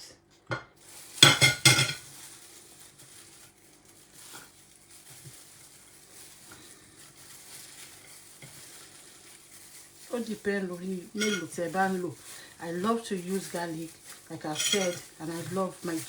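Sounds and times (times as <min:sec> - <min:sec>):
kitchenware clinks and knocks: 0:00.5 - 0:02.0, 0:11.2 - 0:11.6, 0:14.6 - 0:15.1.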